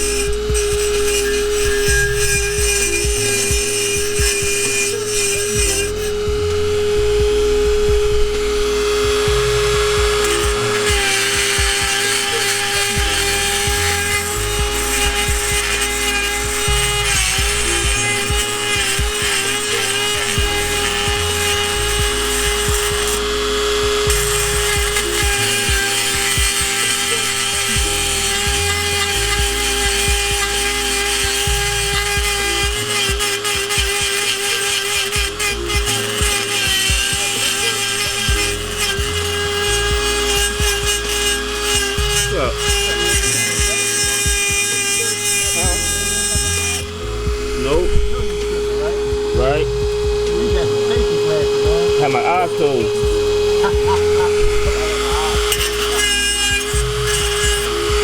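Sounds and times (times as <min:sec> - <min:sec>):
rotary tool grinding whine: 0:00.0 - 0:58.0.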